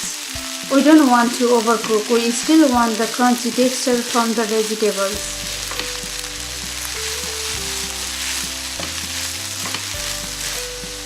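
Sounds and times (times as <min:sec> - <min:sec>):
food sizzling in a pan: 0:00.0 - 0:11.0
soft background music: 0:00.0 - 0:11.0
spatula tapping and scraping: 0:05.4 - 0:11.0.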